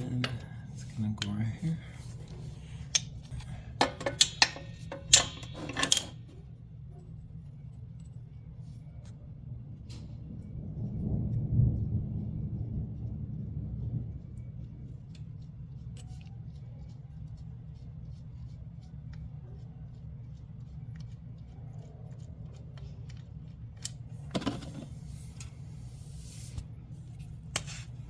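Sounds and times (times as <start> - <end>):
steady low hum: 0.0 - 28.0
socket wrench clicking: 3.8 - 6.2.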